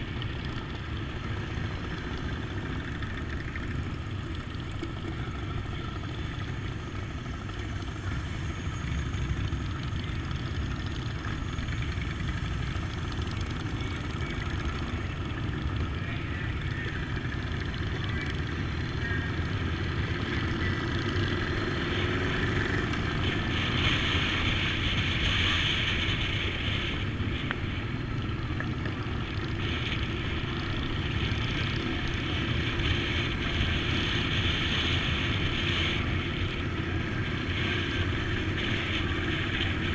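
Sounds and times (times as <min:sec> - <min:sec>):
motorcycle engine rumble: 0:00.0 - 0:39.9.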